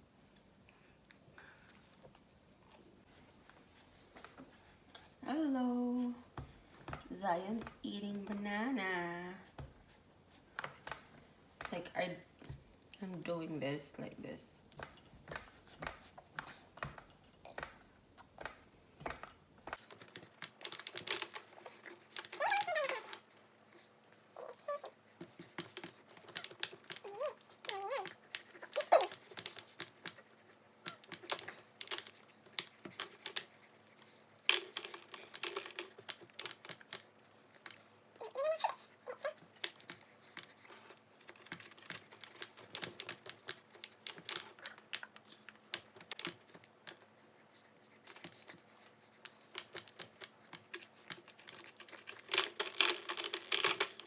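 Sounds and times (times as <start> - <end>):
rustling: 19.6 - 54.0.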